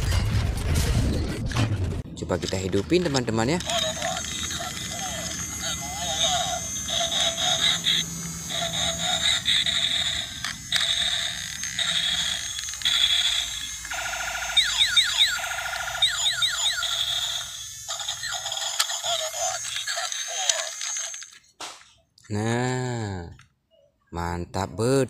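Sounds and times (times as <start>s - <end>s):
buzzy rising chirps: 2.8s - 21.0s
toy electronic beeping tones: 2.8s - 21.4s.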